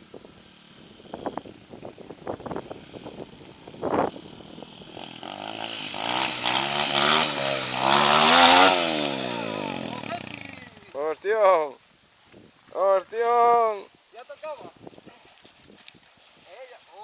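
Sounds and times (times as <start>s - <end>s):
motorbike engine revving: 0.2s - 10.9s.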